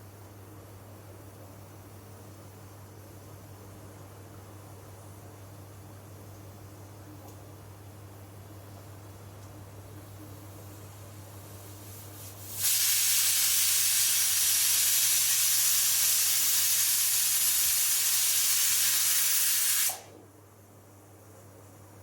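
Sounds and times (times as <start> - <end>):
pressure cooker whistle hissing: 12.5 - 20.1.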